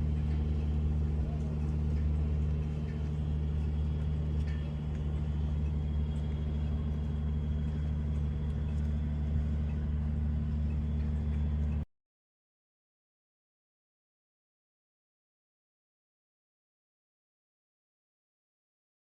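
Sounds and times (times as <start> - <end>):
low mechanical hum: 0.0 - 11.9
faint ticks: 0.2 - 11.8.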